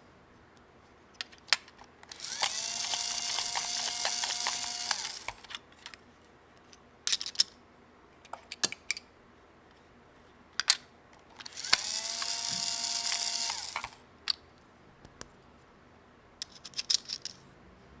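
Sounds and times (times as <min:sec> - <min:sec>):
plastic toy parts clicking: 0:01.2 - 0:06.0, 0:07.1 - 0:07.5, 0:08.3 - 0:09.0, 0:10.6 - 0:14.4, 0:16.4 - 0:17.4
small motor whirring: 0:02.1 - 0:05.6, 0:11.4 - 0:14.0.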